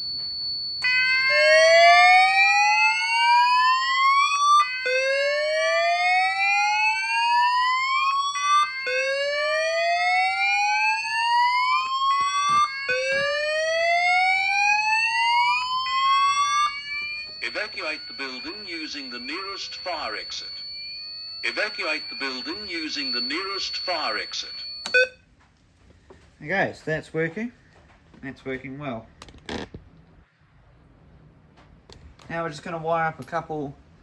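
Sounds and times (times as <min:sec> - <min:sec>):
steady high-pitched alarm tone: 0:00.0 - 0:25.2
rising whoop alarm tone: 0:00.8 - 0:21.0.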